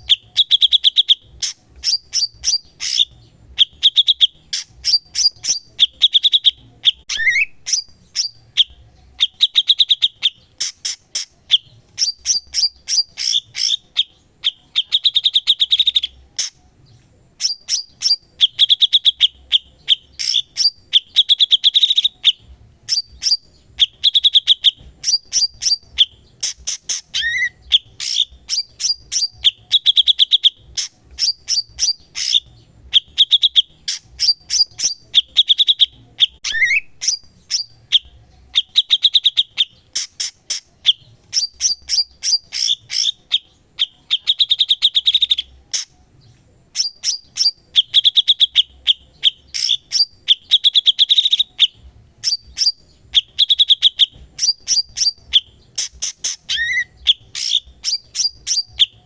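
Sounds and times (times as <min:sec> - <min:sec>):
bird singing chips and trills: 0:00.0 - 0:59.0.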